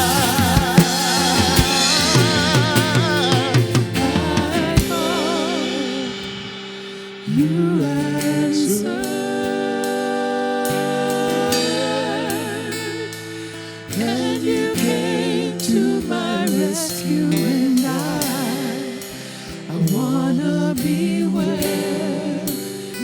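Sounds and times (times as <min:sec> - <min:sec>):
light drum beat: 0:00.0 - 0:09.2
person singing with vibrato: 0:00.0 - 0:23.0.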